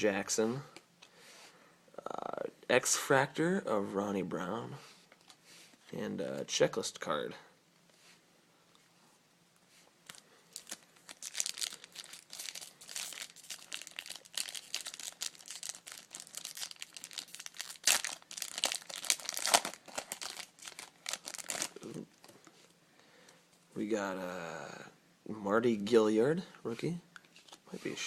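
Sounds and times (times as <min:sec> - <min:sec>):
foil wrapper crinkling and tearing: 0:10.1 - 0:22.2.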